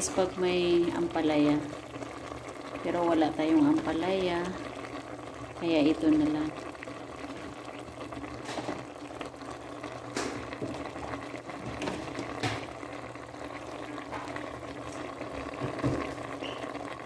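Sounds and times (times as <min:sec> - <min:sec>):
pot bubbling at a boil: 0:00.0 - 0:17.0.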